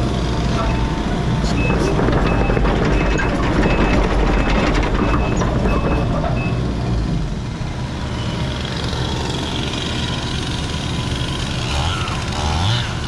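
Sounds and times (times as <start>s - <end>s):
heavy equipment engine under load: 0.0s - 12.4s
backup alarm beeping: 0.5s - 6.7s.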